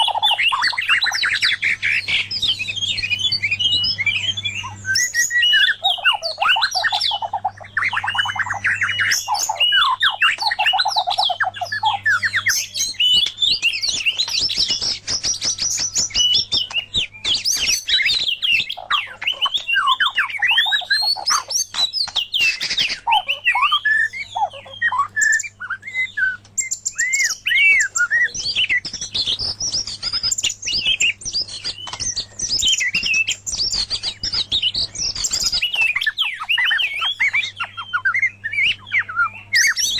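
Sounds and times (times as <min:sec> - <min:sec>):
songbirds whistling and trilling: 0:00.0 - 0:39.9.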